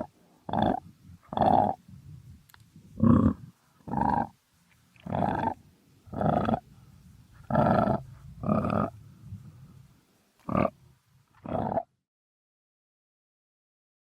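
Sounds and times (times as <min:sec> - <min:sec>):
crocodile grunting: 0:00.0 - 0:01.8, 0:03.0 - 0:04.3, 0:05.0 - 0:06.7, 0:07.4 - 0:09.0, 0:10.4 - 0:10.8, 0:11.4 - 0:11.9.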